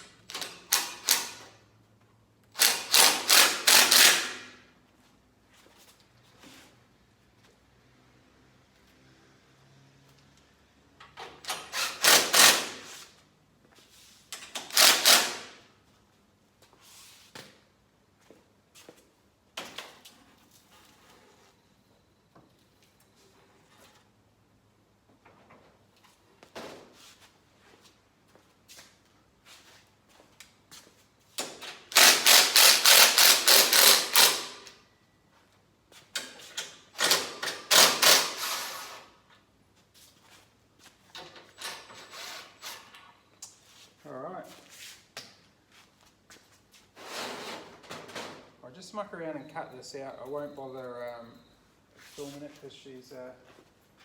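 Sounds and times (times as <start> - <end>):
harsh metalworking bursts: 2.6 - 4.5, 31.9 - 34.6.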